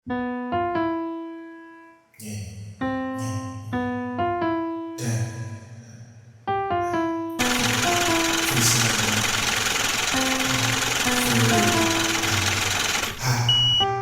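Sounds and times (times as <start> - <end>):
keyboard melody: 0.0 - 2.1, 2.8 - 5.0, 6.5 - 14.0.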